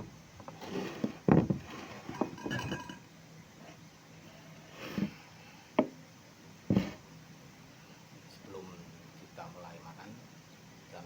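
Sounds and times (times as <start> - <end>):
glass and dishes clinking: 1.3 - 3.0.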